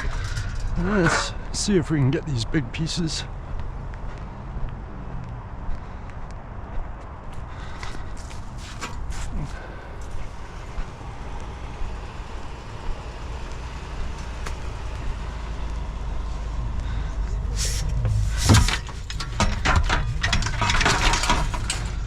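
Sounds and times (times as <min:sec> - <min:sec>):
vehicle idling: 0:00.0 - 0:22.0
loud metallic clunk: 0:17.6 - 0:22.0.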